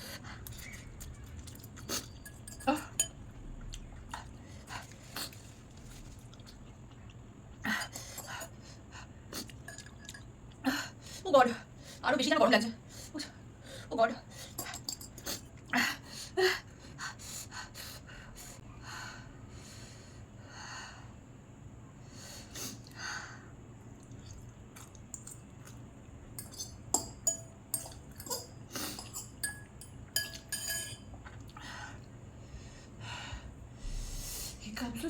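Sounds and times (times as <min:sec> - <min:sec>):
woman breathing hard: 0:31.6 - 0:34.6.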